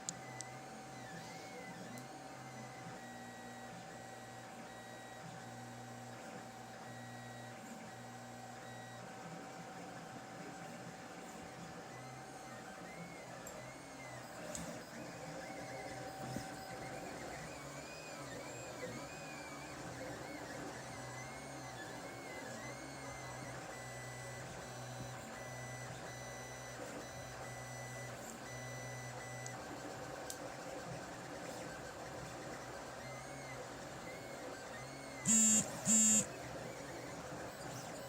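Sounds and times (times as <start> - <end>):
stepper motors whining: 35.0 - 36.3.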